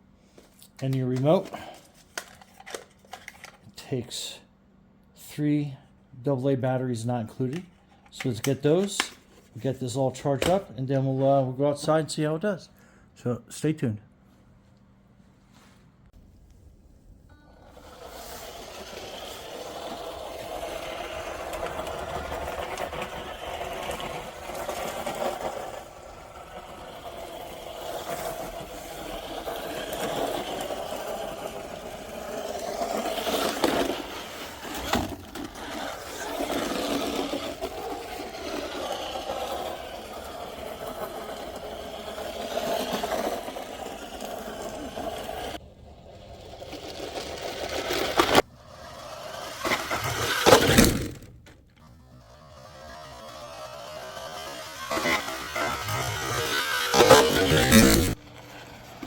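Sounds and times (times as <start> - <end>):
electric toy truck motor whine: 17.3 - 59.0.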